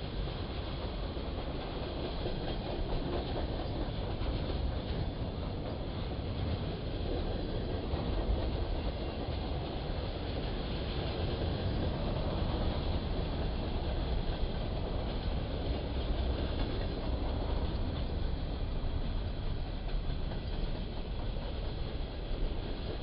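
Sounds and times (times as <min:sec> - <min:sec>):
train rumbling on rails: 0:00.0 - 0:23.0.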